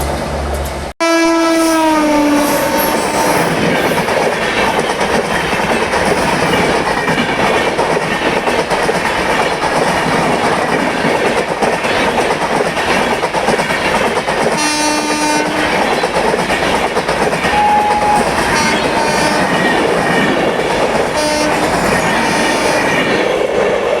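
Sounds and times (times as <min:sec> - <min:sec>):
train rumbling on track: 0:00.0 - 0:24.0
locomotive horn: 0:01.0 - 0:03.6, 0:14.6 - 0:15.9, 0:17.6 - 0:19.8, 0:21.2 - 0:23.2
wheels clattering over rails: 0:03.4 - 0:24.0.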